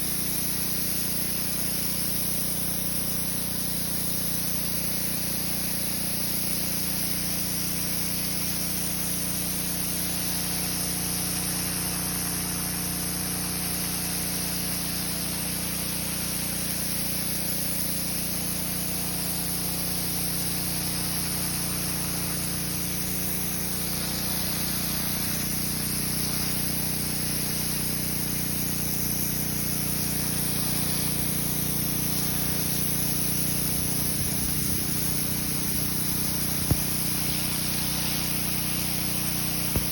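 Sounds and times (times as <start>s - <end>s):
pressure washer motor hum: 0.0s - 39.9s
pressure washer water jet hissing: 0.0s - 39.9s.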